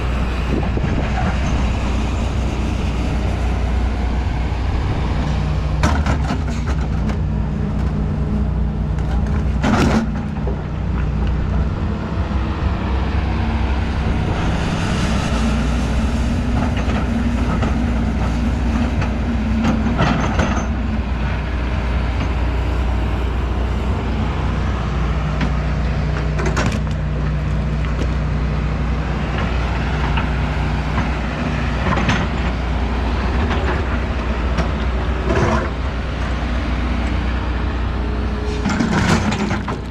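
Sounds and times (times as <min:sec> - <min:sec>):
excavator diesel engine running: 0:00.0 - 0:39.9
excavator bucket clanking: 0:05.7 - 0:11.8, 0:16.4 - 0:23.2, 0:25.3 - 0:28.2, 0:38.0 - 0:39.9.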